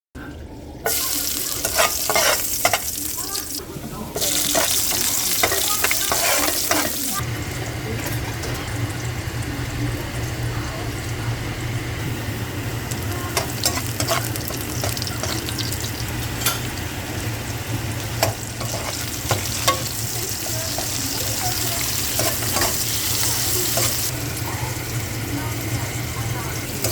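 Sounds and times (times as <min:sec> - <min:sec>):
utensil scraping against pan: 0:00.9 - 0:03.1, 0:04.2 - 0:07.2, 0:13.4 - 0:15.7, 0:18.2 - 0:24.1
food sizzling in a pan: 0:00.9 - 0:26.9.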